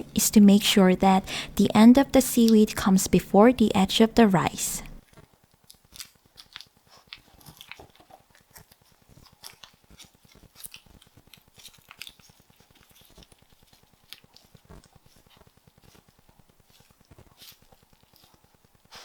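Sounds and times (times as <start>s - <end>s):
seaweed sheet crinkling: 5.2s - 18.7s.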